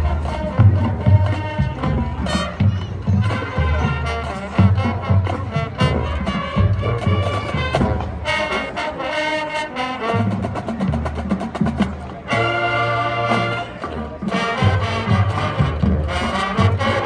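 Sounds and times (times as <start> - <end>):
drumline playing: 0.0 - 17.0
brass section playing chords: 12.3 - 17.0.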